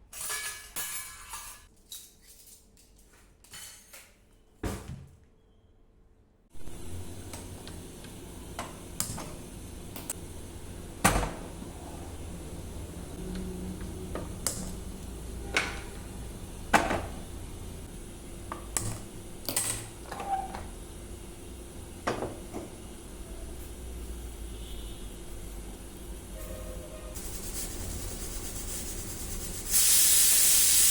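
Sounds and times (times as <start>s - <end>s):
dishes and utensils clinking: 0.0s - 2.7s.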